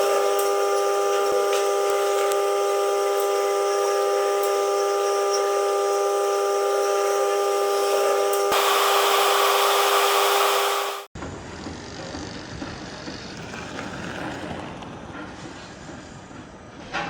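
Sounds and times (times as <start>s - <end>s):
mechanical whine: 0.0s - 11.1s.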